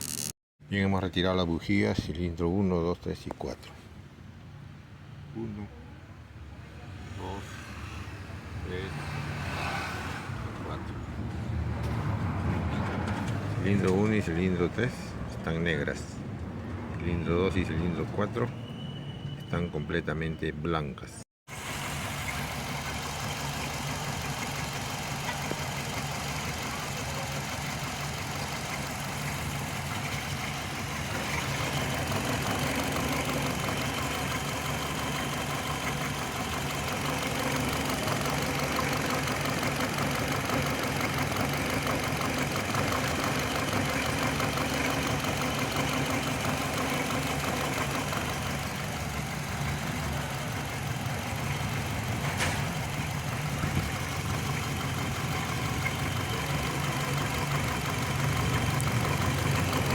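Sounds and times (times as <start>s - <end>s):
car engine idling: 21.5s - 59.9s.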